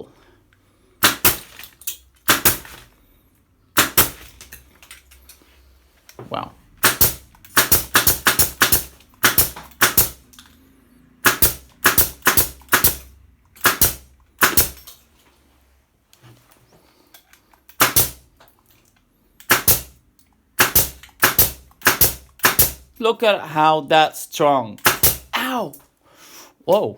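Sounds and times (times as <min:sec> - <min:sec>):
nail gun firing into metal: 0:01.0 - 0:02.9, 0:03.8 - 0:04.6, 0:06.8 - 0:10.2, 0:11.2 - 0:14.9, 0:17.7 - 0:18.2, 0:19.4 - 0:20.0, 0:20.6 - 0:22.9, 0:24.8 - 0:25.3.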